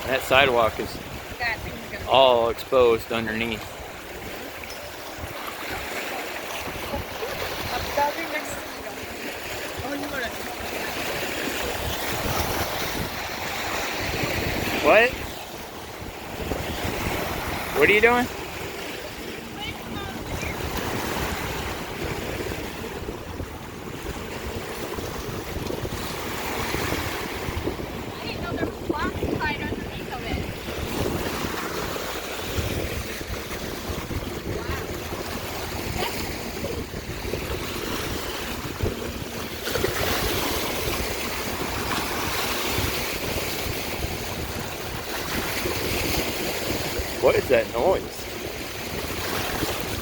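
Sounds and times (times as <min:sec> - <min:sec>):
lake waves washing in: 0:00.0 - 0:50.0
wind buffeting microphone: 0:00.0 - 0:50.0.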